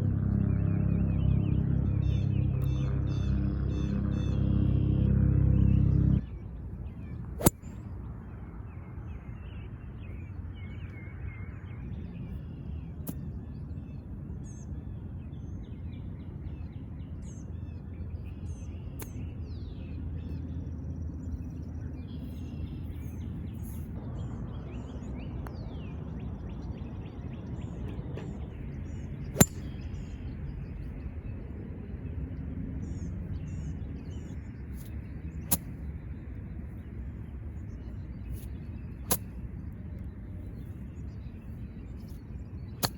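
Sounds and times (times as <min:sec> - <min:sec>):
low outdoor rumble: 0:00.0 - 0:42.9
golf clubs striking balls: 0:07.3 - 0:07.7, 0:29.3 - 0:30.2, 0:42.1 - 0:42.9
small birds chirping: 0:25.5 - 0:42.9.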